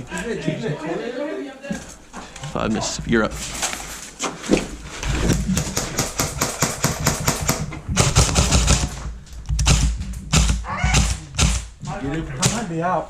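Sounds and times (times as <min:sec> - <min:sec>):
airsoft rifle shots: 0:05.5 - 0:09.0, 0:09.6 - 0:11.8.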